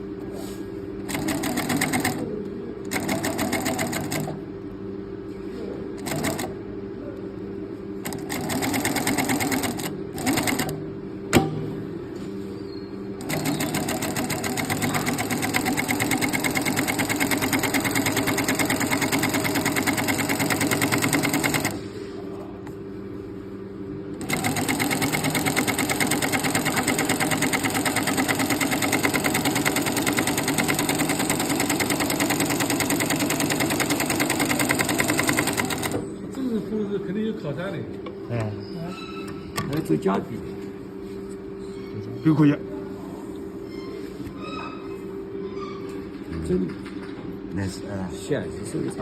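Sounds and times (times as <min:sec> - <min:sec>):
sewing machine motor hum: 0:01.0 - 0:04.4, 0:06.0 - 0:06.6, 0:08.0 - 0:10.8, 0:13.2 - 0:21.9, 0:24.2 - 0:36.2
sewing machine stitching: 0:01.1 - 0:02.3, 0:02.9 - 0:04.4, 0:06.0 - 0:06.5, 0:08.0 - 0:10.8, 0:13.2 - 0:21.8, 0:24.2 - 0:36.0.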